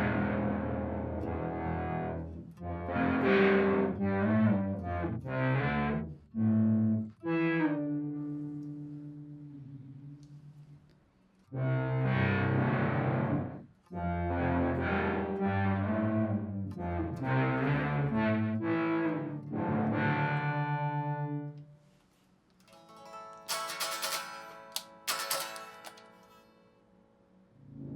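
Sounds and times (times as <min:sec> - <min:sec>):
electric guitar with delay: 0:00.0 - 0:04.0.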